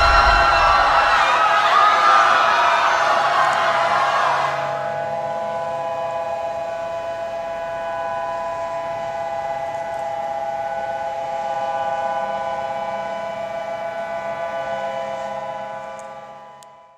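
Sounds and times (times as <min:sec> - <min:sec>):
warning siren steady tone: 0:04.7 - 0:16.9.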